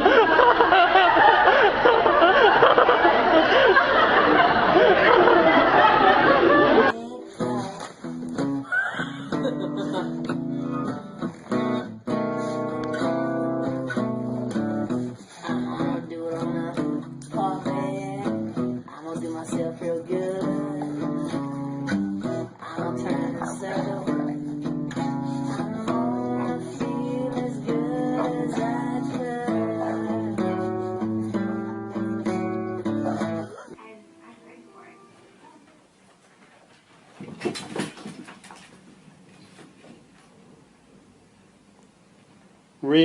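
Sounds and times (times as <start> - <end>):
acoustic guitar strumming: 5.8 - 35.4.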